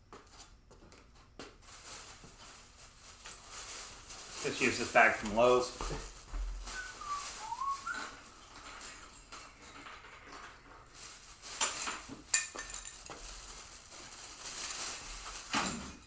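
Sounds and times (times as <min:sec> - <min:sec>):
rustling handling noise: 0:00.4 - 0:16.0
small hard parts clinking: 0:04.4 - 0:13.8.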